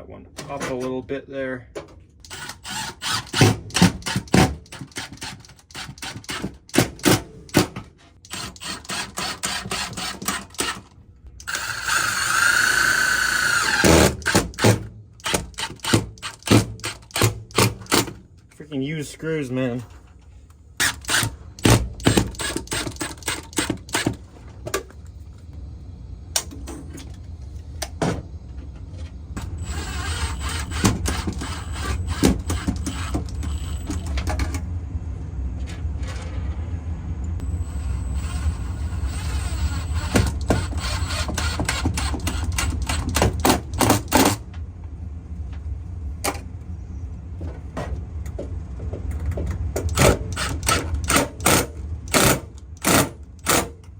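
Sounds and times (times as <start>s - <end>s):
power drill driving screws: 2.3s - 6.5s, 8.3s - 10.8s, 11.4s - 18.0s, 20.8s - 24.2s, 29.5s - 34.0s, 37.6s - 44.4s, 49.9s - 53.6s.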